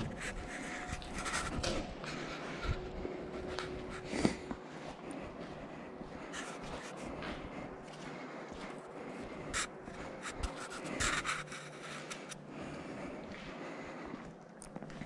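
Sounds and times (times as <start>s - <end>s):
footsteps scuffing on ground: 0.0s - 11.8s.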